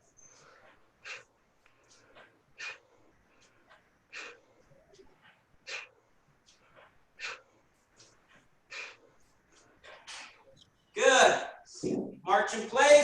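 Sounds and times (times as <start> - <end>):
faint inhales: 0.2 - 5.0, 7.2 - 8.1, 8.7 - 9.8.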